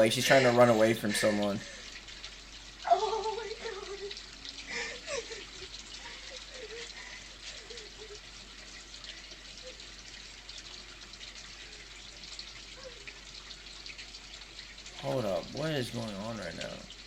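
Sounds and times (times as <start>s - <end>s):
woman sobbing: 0.2s - 2.0s, 2.8s - 8.4s.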